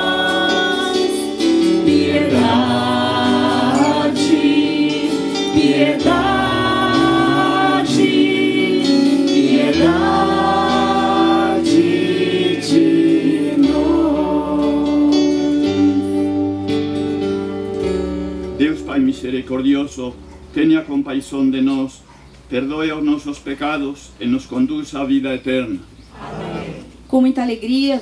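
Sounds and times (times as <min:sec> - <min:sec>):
choir singing a slow chant: 0:00.0 - 0:16.2
held low accompaniment notes: 0:01.6 - 0:21.0.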